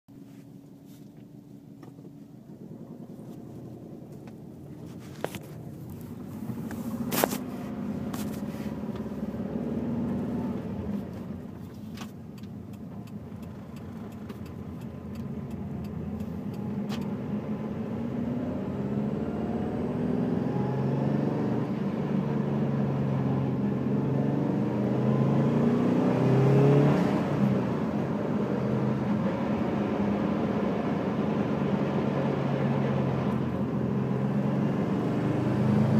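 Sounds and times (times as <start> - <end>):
car engine grinding: 1.0 - 23.1.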